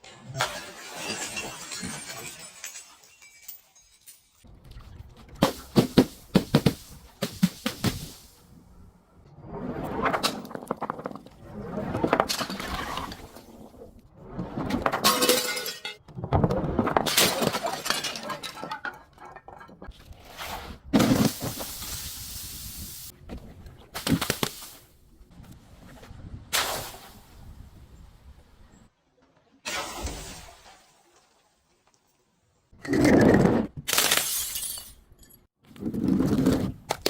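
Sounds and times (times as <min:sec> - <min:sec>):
glass crushing and breaking: 0:00.2 - 0:04.5, 0:15.0 - 0:16.0, 0:17.0 - 0:19.9, 0:33.9 - 0:35.5.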